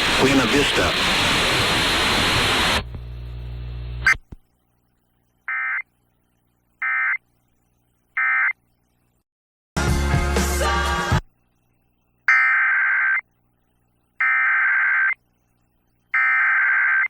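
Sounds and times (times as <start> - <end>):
buzzy data tone bursts: 0.2 - 4.3, 11.4 - 17.0.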